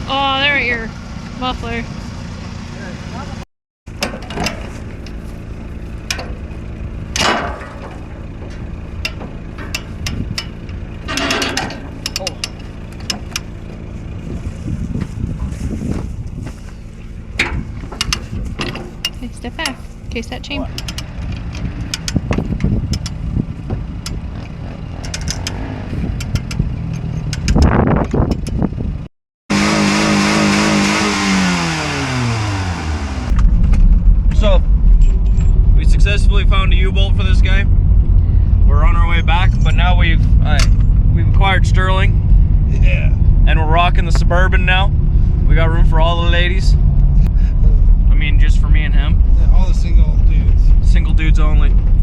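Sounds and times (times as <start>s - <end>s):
vehicle engine idling: 0.0s - 31.4s, 32.0s - 52.0s
sharp clicks and knocks: 6.0s - 6.4s, 7.1s - 13.5s, 17.4s - 19.8s, 20.7s - 28.8s
metal chain clanks and clicks: 8.5s - 13.5s.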